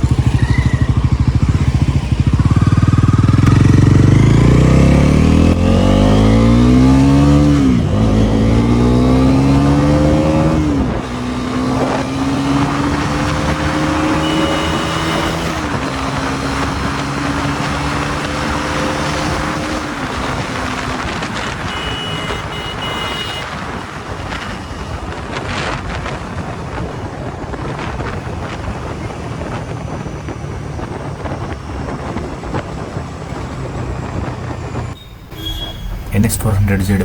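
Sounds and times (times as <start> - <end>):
motorcycle engine running: 0.0 - 8.5.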